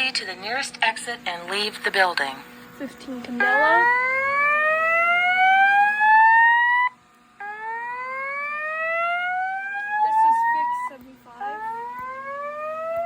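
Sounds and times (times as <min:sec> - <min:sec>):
fire alarm whoop tone: 0:03.4 - 0:13.0.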